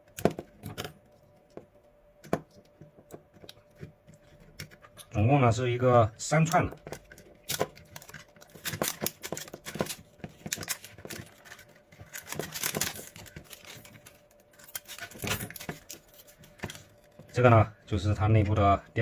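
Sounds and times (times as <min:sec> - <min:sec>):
plastic wrapping clicking and crackling: 0:06.4 - 0:17.4.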